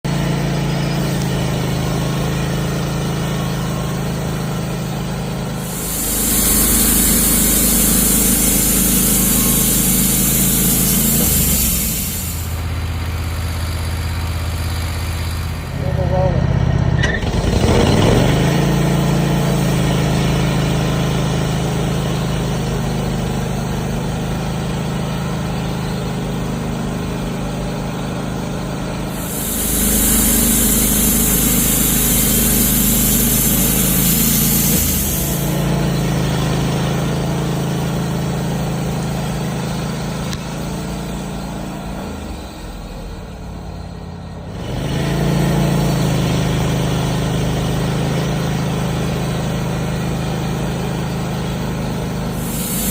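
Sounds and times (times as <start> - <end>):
sawmill engine drone: 0.0 - 52.9
loud hiss: 4.0 - 16.0, 25.6 - 37.0, 50.8 - 52.9.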